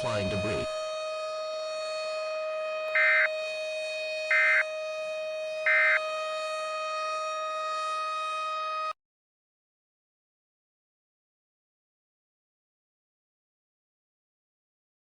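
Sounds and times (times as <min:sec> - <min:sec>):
steady electronic alarm tone: 0:00.0 - 0:09.0
screeching digital data tones: 0:04.3 - 0:04.6.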